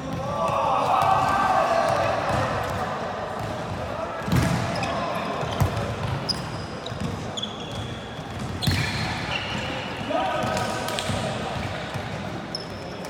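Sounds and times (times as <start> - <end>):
hubbub of voices: 0.0 - 13.0
sneakers squeaking on gym court: 4.2 - 13.0.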